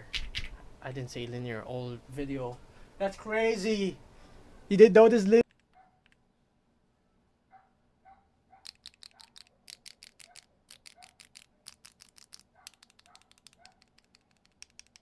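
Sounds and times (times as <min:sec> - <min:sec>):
mechanical keyboard typing: 0:08.7 - 0:15.0.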